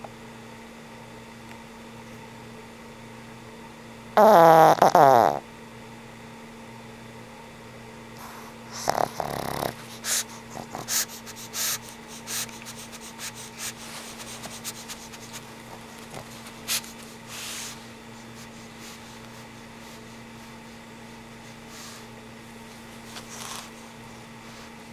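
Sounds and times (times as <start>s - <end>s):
dog snoring: 4.2s - 5.4s, 8.2s - 16.8s
dog snuffling: 8.2s - 20.6s, 23.0s - 24.7s.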